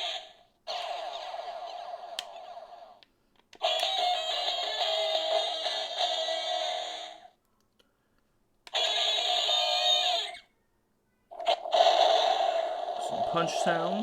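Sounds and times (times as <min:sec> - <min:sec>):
tinny toy electronic music: 0:03.6 - 0:07.3, 0:08.7 - 0:10.5.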